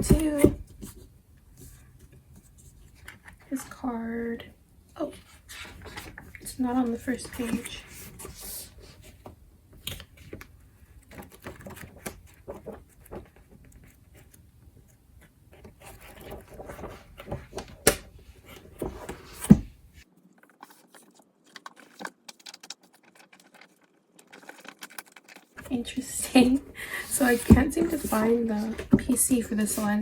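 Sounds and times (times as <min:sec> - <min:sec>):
magazine pages flipping: 0:20.2 - 0:30.0.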